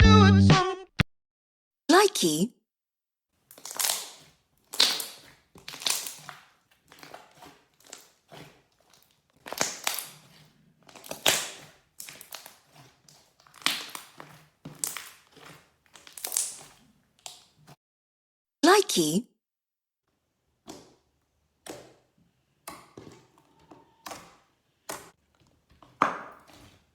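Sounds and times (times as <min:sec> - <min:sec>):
slime squishing by hand: 0:03.4 - 0:17.8, 0:20.1 - 0:26.9.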